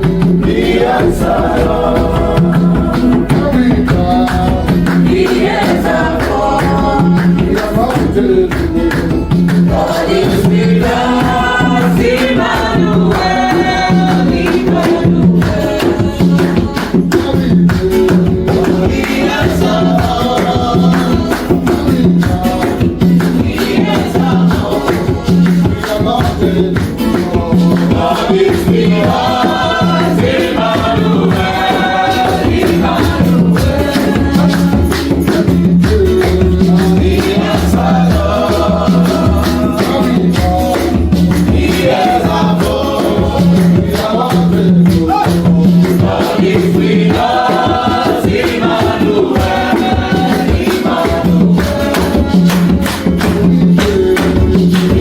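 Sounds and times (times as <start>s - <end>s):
beat with light percussion: 0.0s - 55.0s
voices singing gospel music: 0.0s - 55.0s.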